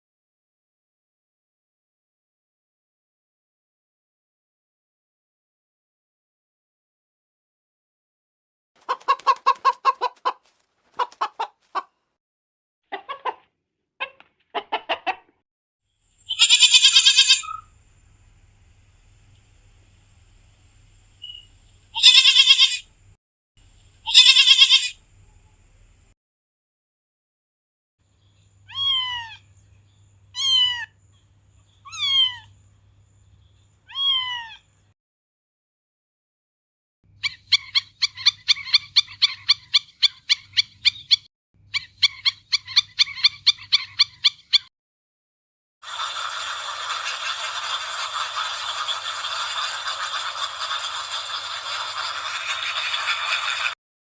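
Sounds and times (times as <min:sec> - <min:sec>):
cat meowing: 0:16.3 - 0:17.6, 0:22.0 - 0:22.8, 0:24.1 - 0:24.9, 0:28.7 - 0:29.4, 0:30.3 - 0:30.9, 0:31.8 - 0:32.5, 0:33.9 - 0:34.6
scratchy scraping: 0:45.9 - 0:53.8.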